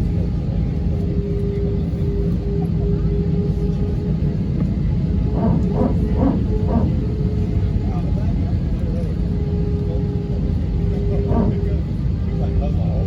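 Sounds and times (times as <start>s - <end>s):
airplane cabin rumble: 0.0s - 13.0s
muffled voice: 4.5s - 13.0s.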